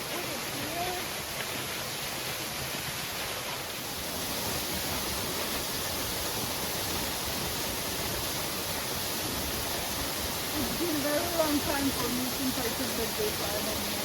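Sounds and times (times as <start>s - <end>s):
waterfall rushing into pool: 0.0s - 14.0s.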